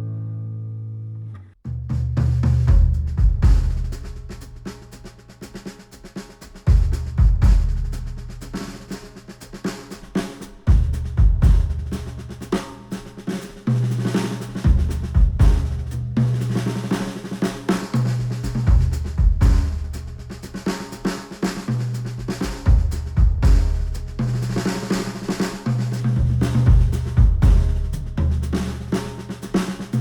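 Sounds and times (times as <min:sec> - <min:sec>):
deep bass line: 0:00.0 - 0:04.6, 0:06.7 - 0:08.5, 0:10.7 - 0:12.3, 0:14.7 - 0:16.6, 0:18.2 - 0:20.5, 0:22.0 - 0:24.7, 0:25.8 - 0:29.1
drum kit: 0:01.7 - 0:30.0.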